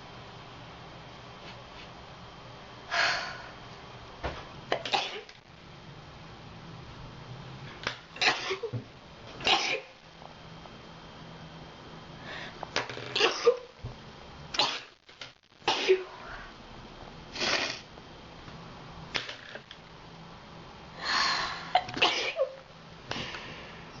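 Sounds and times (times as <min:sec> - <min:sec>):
person sneezing: 0:09.4 - 0:09.9, 0:15.7 - 0:16.2, 0:17.4 - 0:17.9, 0:21.8 - 0:22.5.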